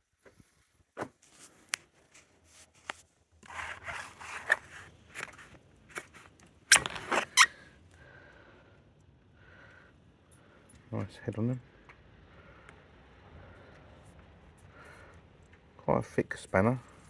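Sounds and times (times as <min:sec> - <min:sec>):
packaging and foam scraping: 0:02.2 - 0:07.7.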